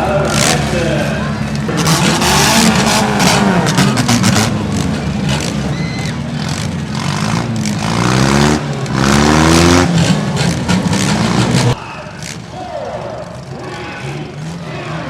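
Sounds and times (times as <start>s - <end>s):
car engine revving loudly: 0.2s - 5.7s, 6.3s - 11.8s.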